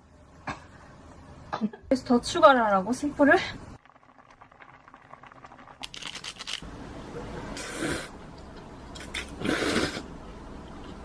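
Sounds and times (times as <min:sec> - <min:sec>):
plastic packet crinkling and tearing: 0:05.8 - 0:06.6.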